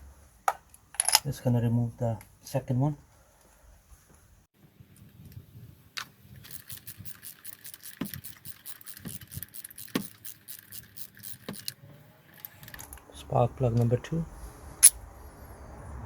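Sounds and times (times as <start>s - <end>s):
ratchet clicking: 6.4s - 11.8s.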